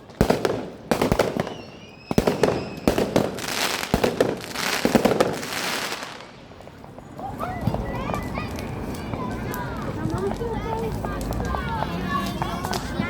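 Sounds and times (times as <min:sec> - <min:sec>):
fireworks bangs and crackling: 0:00.0 - 0:13.0
faint firework whistle: 0:01.2 - 0:04.3, 0:07.0 - 0:09.0.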